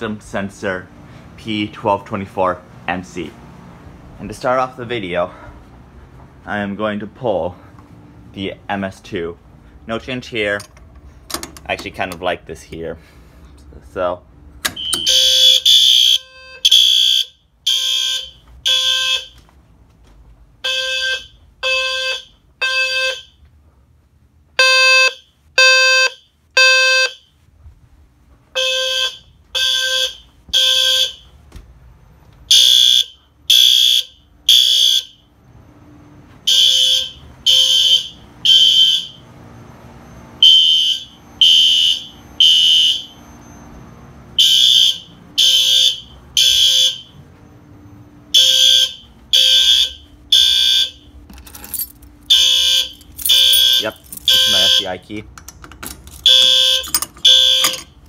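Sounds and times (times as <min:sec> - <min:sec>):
fire alarm horn blasts: 0:14.8 - 0:19.5, 0:20.6 - 0:23.4, 0:24.6 - 0:27.4, 0:28.5 - 0:31.4, 0:32.5 - 0:35.4, 0:36.4 - 0:55.1, 0:56.1 - 0:58.0.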